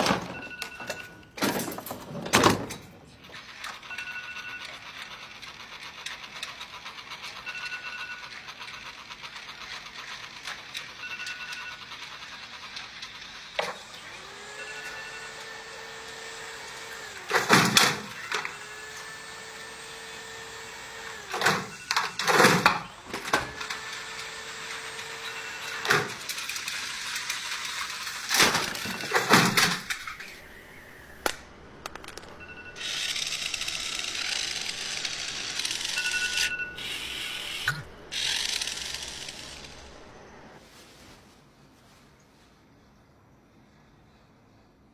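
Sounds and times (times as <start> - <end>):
machine motor humming: 13.6 - 40.6.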